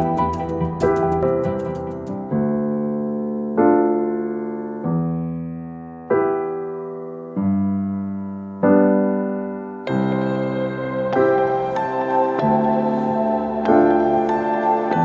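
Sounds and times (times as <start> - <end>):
slow instrumental music chords: 0.0 - 2.8, 9.9 - 15.0.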